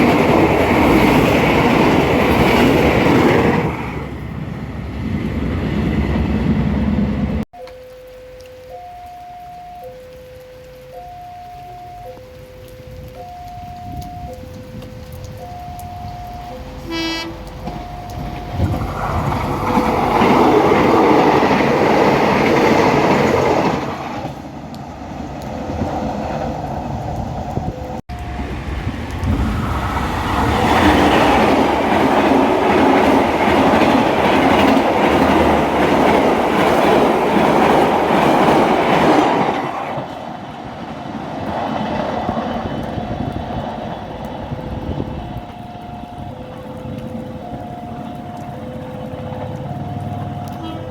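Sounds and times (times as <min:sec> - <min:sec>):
crossing alarm tones: 0:07.6 - 0:23.8, 0:30.4 - 0:39.6, 0:43.9 - 0:50.9
train horn: 0:16.8 - 0:17.8, 0:50.4 - 0:50.9
train wheels clattering on rails: 0:28.4 - 0:40.3.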